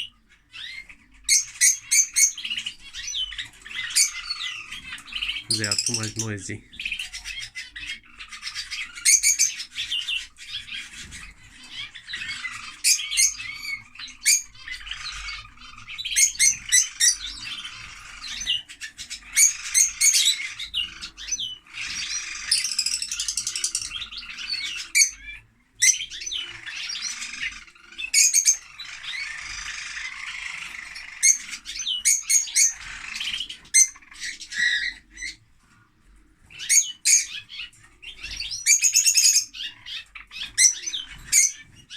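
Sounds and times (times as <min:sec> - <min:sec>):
birds chattering and chirping: 0:00.0 - 0:41.9
high-pitched bird squawks: 0:05.4 - 0:06.7.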